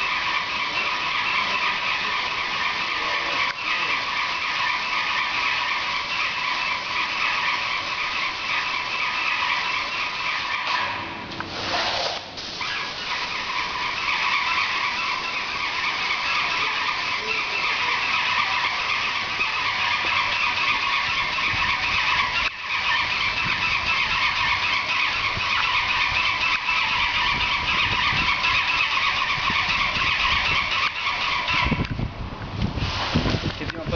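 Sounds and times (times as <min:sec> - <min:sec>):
paint sprayer hissing: 0:00.0 - 0:24.0.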